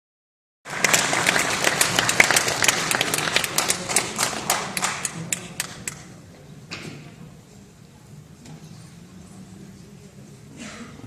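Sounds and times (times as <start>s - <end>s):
audience applauding: 0.7s - 6.0s.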